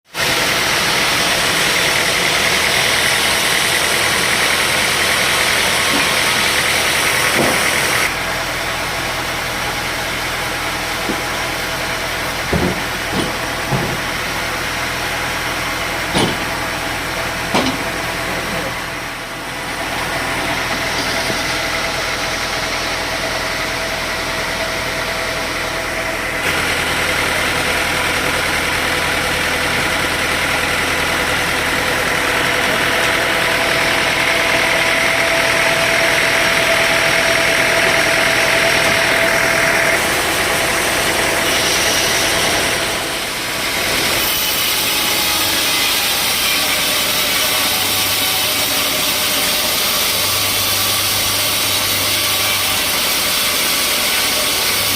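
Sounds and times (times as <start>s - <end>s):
sawmill machinery droning: 0.0s - 54.9s
steady whining tones: 15.2s - 46.8s.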